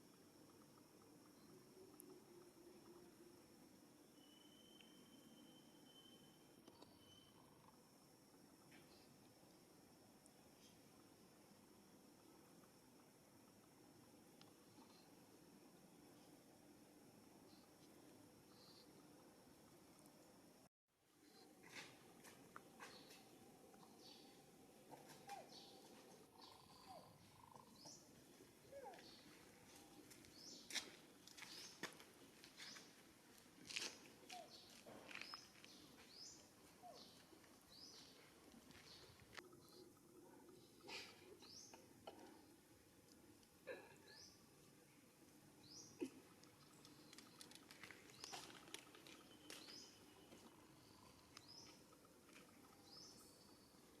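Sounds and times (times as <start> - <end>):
bird chirping: 4.0 - 7.7, 22.8 - 29.4
faint animal chirps: 25.0 - 28.0, 28.6 - 29.2
faint clicks and rustling: 46.2 - 52.8.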